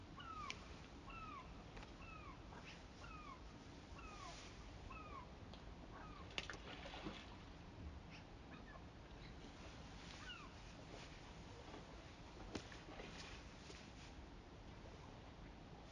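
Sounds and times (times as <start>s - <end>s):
bird calling faintly: 0.0s - 7.2s, 8.0s - 10.9s.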